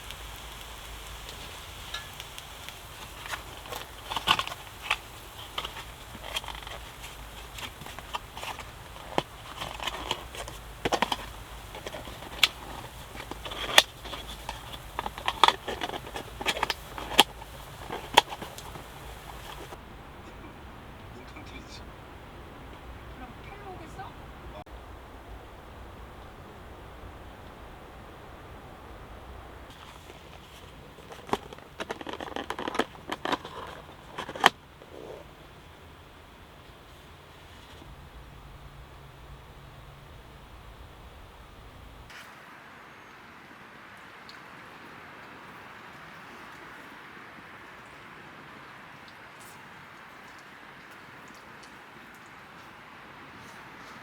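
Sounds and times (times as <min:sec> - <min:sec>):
low background hum: 0:00.0 - 0:42.1
utensils tapping cookware: 0:01.3 - 0:19.8.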